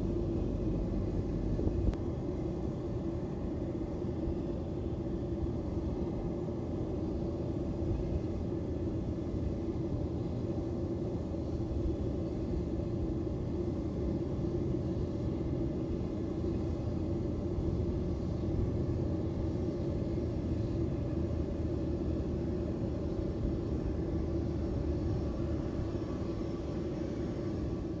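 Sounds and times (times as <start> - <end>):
jet engines idling: 0.0 - 28.0.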